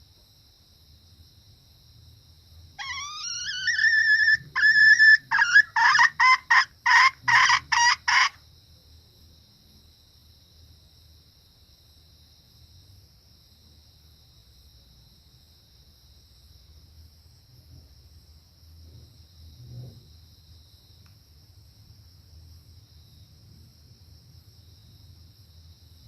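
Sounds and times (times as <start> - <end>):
hen calling and clucking: 2.8 - 8.4
insects shrilling: 2.8 - 8.4.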